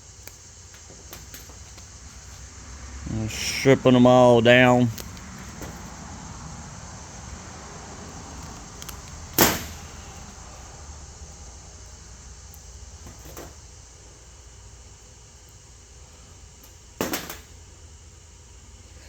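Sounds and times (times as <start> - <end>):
low background noise: 0.0 - 19.0
wire strippers snapping: 4.9 - 6.0, 8.3 - 10.3.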